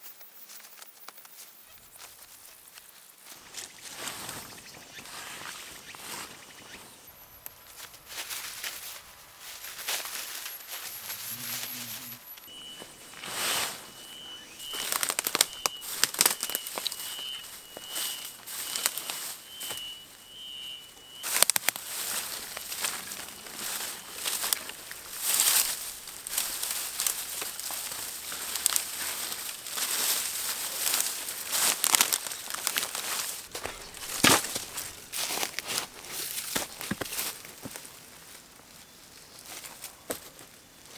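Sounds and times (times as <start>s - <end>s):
insect high trill: 3.3s - 37.4s
packaging crinkling: 12.5s - 19.2s, 21.2s - 37.6s.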